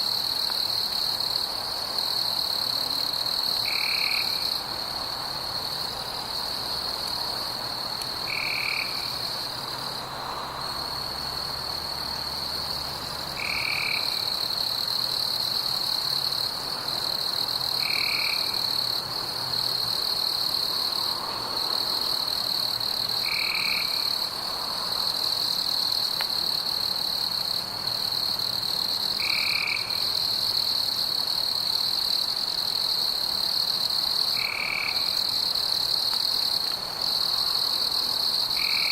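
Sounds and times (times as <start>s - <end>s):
high insect trill: 0.0s - 38.9s
frogs croaking: 3.1s - 4.6s, 7.9s - 9.4s, 13.4s - 14.6s, 17.8s - 18.9s, 23.1s - 24.3s, 34.2s - 35.3s.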